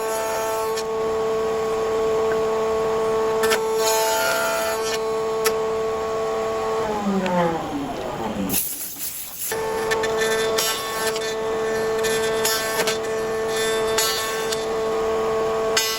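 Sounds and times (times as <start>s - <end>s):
power tool motor whining: 0.0s - 15.9s.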